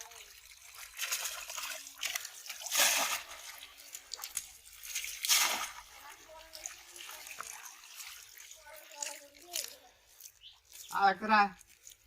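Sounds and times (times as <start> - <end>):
water splashing in a pond: 0.0 - 12.0.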